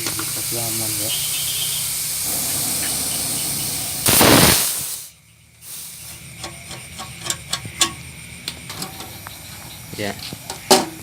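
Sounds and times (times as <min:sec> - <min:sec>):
compressed air hissing: 0:00.0 - 0:06.3.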